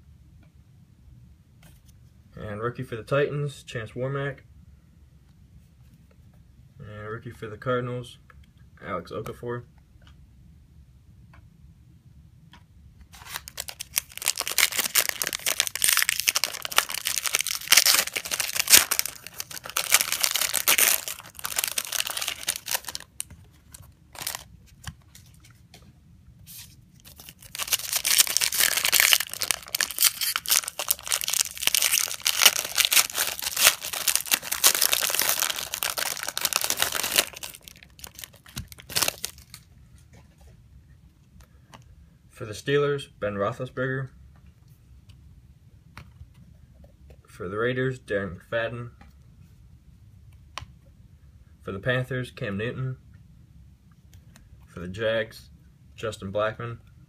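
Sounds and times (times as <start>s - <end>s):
foil wrappers tearing and crinkling: 13.2s - 24.5s, 27.0s - 39.6s.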